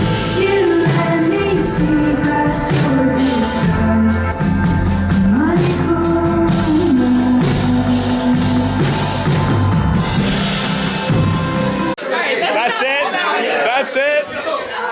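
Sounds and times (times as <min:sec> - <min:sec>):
person singing long notes: 0:00.0 - 0:09.6
bass and drums: 0:00.0 - 0:12.0.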